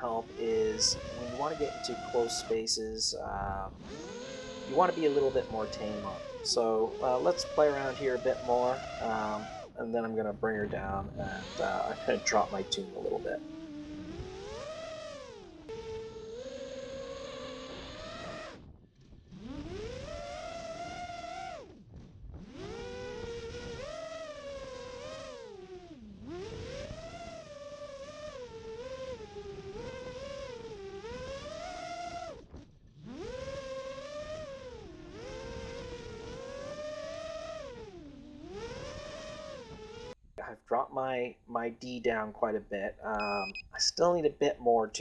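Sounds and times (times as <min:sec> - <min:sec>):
quadcopter motors whining: 0:00.0 - 0:18.6, 0:19.3 - 0:21.6, 0:33.0 - 0:40.1.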